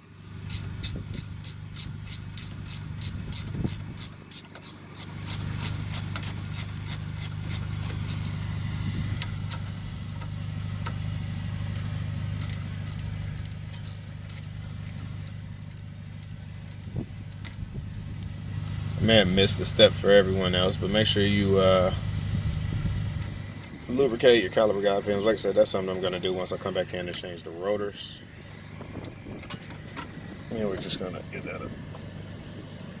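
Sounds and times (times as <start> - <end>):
low engine hum: 0.0 - 33.0
ratchet wrench clicking: 0.4 - 8.4, 9.2 - 11.0, 11.6 - 18.4.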